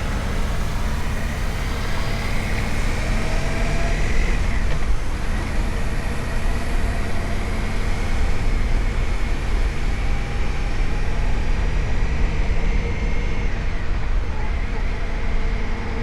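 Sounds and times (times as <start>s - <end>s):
high-pitched whine: 0.0s - 6.4s.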